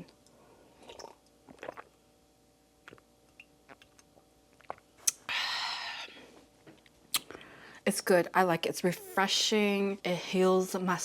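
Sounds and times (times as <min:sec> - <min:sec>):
faint steady hum: 0:00.0 - 0:11.0
mouth eating sounds: 0:00.9 - 0:02.0, 0:02.8 - 0:03.1, 0:03.7 - 0:05.3.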